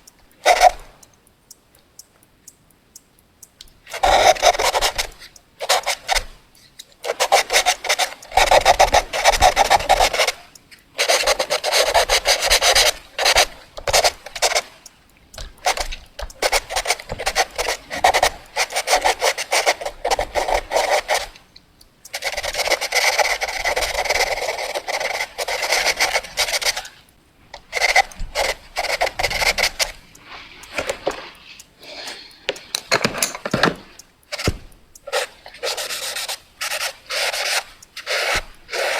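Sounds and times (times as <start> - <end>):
pencil scratching on paper: 4.0 - 6.3, 7.0 - 14.6, 15.5 - 21.4, 27.7 - 38.9.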